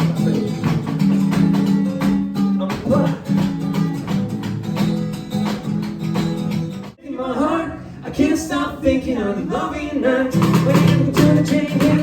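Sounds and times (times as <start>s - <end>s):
drums keeping steady beat: 0.0s - 7.0s, 10.4s - 12.0s.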